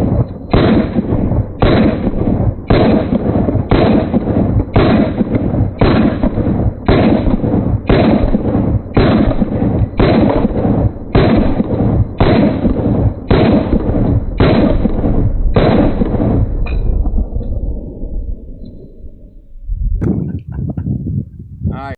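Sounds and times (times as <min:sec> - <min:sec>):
pistol shots: 0:00.0 - 0:16.8.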